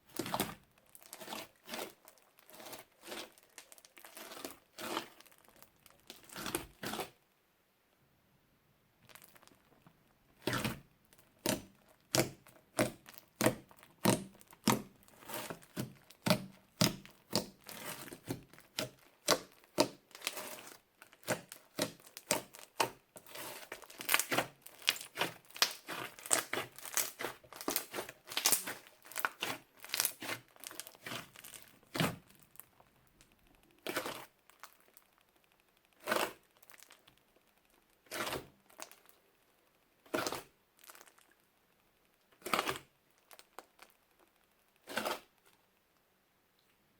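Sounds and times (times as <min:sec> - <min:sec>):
crunchy slime crackling pops: 0:10.4 - 0:39.2, 0:40.0 - 0:41.3.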